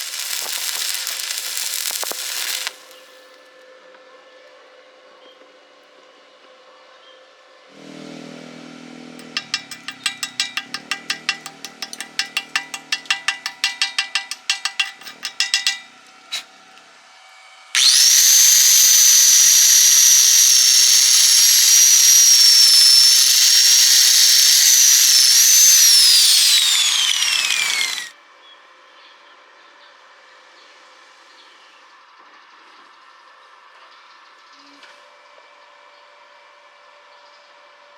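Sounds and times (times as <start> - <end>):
angle grinder whining: 0.0 - 3.3, 9.2 - 16.5, 17.8 - 28.1
rapid metal tapping: 9.2 - 16.4.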